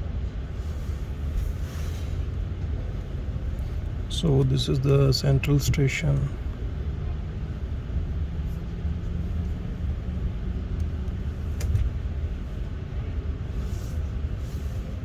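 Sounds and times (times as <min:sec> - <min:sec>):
electric train rumble: 0:00.0 - 0:15.0.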